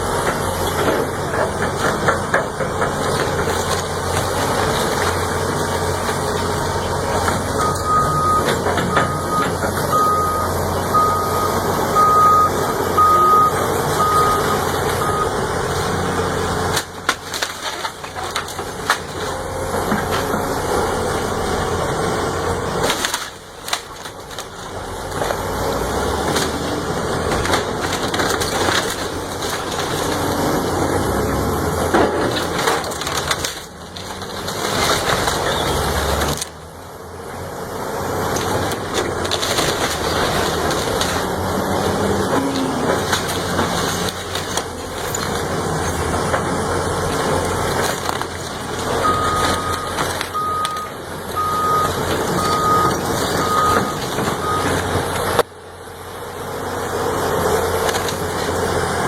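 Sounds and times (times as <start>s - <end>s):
heavy machinery running: 0.0s - 59.0s
reversing alarm beeping: 7.6s - 15.5s, 49.0s - 54.9s.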